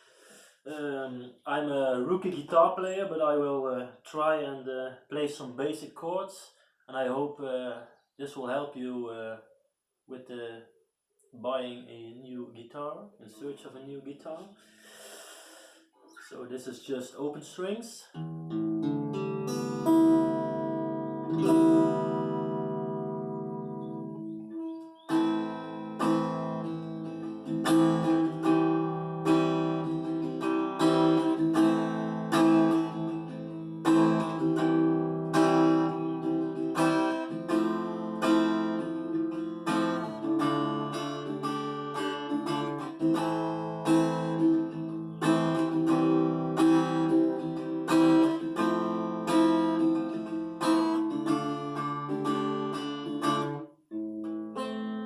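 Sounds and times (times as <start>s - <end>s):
acoustic guitar strumming: 18.2s - 55.0s.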